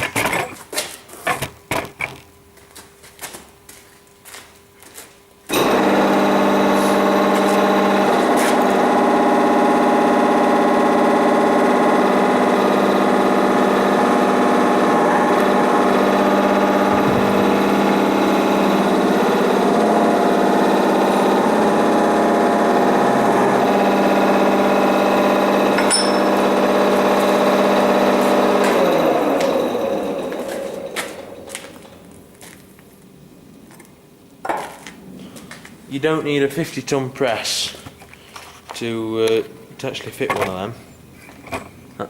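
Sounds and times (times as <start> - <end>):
motor humming: 5.5 - 32.3.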